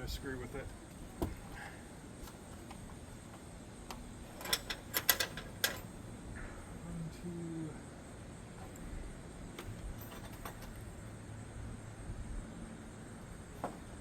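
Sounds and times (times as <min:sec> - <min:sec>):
tools clicking and knocking: 0:03.9 - 0:05.9.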